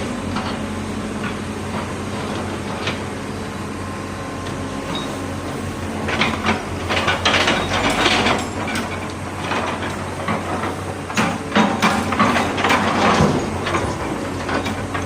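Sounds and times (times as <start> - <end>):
diesel engine of heavy machinery: 0.0 - 15.0
metal clanking and scraping rock: 5.9 - 15.0.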